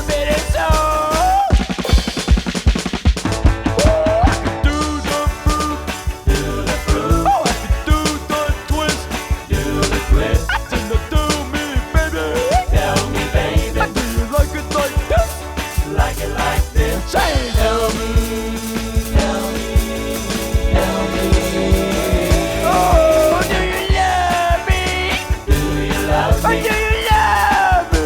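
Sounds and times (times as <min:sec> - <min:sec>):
drums and bass: 0:00.0 - 0:28.0
person singing: 0:03.8 - 0:28.0.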